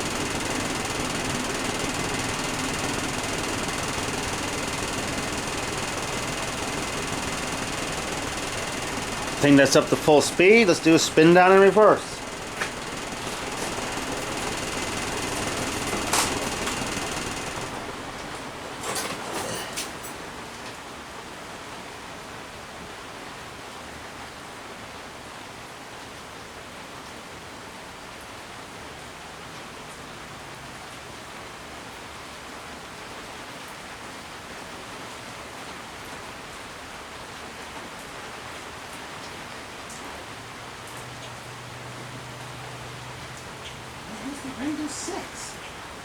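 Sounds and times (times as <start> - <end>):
ceiling fan blades whooshing: 0.0 - 20.4.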